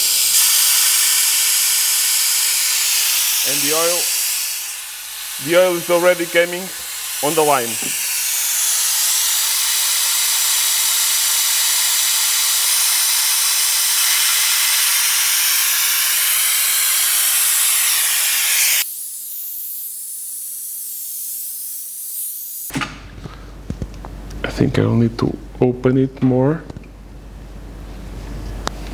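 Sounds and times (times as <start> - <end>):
air tool hissing loudly: 0.0 - 22.7
faint high hiss: 5.4 - 8.0.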